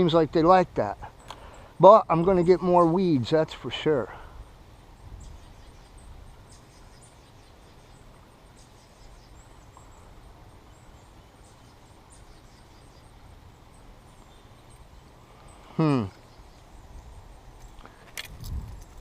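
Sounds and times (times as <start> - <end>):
low outdoor background: 0.0 - 19.0
bird chirps: 3.8 - 18.0.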